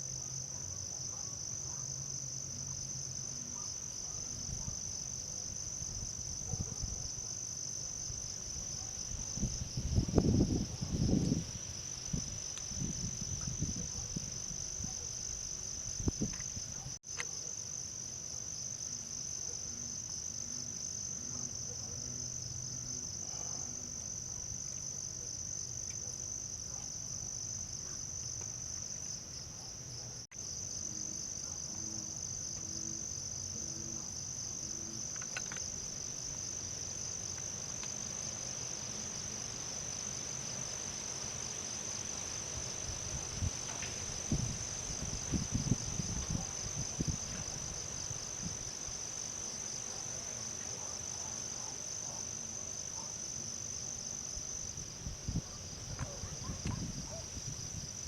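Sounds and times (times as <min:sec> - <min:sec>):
crickets trilling: 0:00.0 - 0:58.0.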